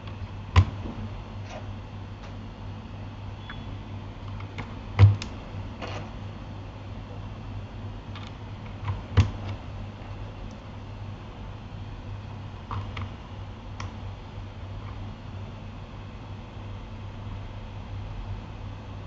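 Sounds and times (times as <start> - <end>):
keyboard clicks and knocks: 0.0 - 1.1, 4.2 - 6.1, 8.1 - 9.7, 12.6 - 13.2
steady low hum: 0.0 - 19.0.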